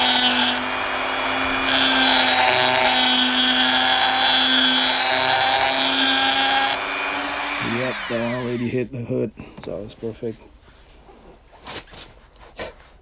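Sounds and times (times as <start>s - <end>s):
power tool grinding: 0.0s - 8.8s.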